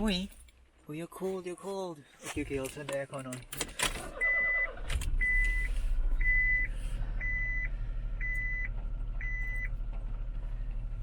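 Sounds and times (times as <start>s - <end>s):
car engine idling: 3.9s - 11.0s
car warning beeper: 4.1s - 9.7s.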